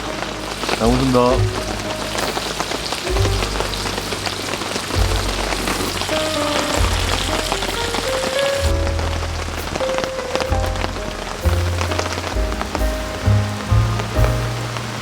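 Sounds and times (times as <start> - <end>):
background music with bass beat: 0.0 - 15.0
rain pattering: 0.0 - 15.0.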